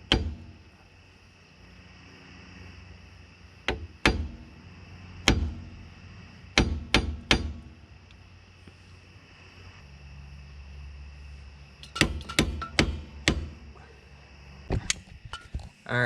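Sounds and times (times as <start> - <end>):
hammer striking metal: 11.8 - 13.6.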